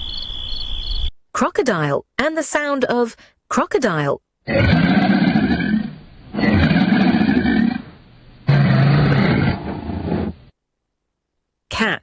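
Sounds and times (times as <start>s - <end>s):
crocodile growling: 4.5s - 10.4s.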